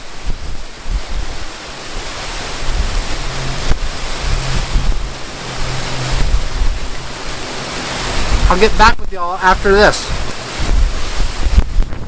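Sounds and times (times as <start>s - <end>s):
low steady hum: 0.0s - 9.1s
strong wind buffeting microphone: 0.0s - 12.0s.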